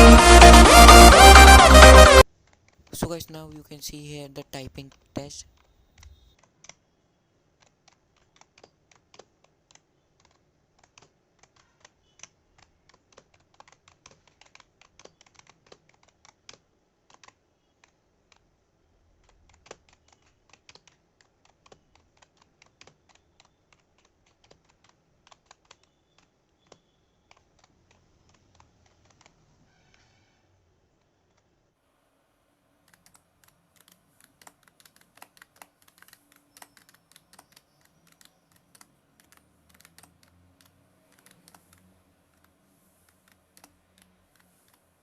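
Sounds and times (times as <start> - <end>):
soft keyboard key clicks: 7.6 - 18.5, 19.2 - 29.4, 32.9 - 44.8.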